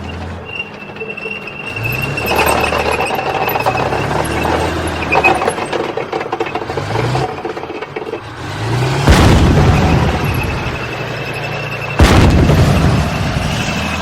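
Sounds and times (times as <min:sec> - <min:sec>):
clattering tracks: 0:00.0 - 0:14.0
tank engine revving: 0:00.0 - 0:14.0
loud boom: 0:09.1 - 0:10.8, 0:12.0 - 0:13.8.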